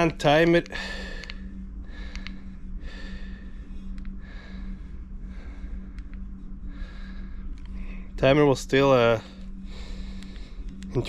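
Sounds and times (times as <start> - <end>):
steady low hum: 0.0 - 11.0
person breathing: 0.6 - 8.2, 9.2 - 10.9
faint clicks: 2.0 - 2.4, 3.9 - 4.2.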